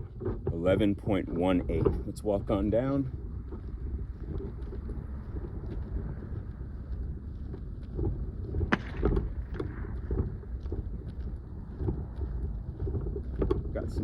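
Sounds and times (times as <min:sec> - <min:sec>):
footsteps walking: 0:00.0 - 0:14.0
wind rumble on microphone: 0:00.0 - 0:14.0.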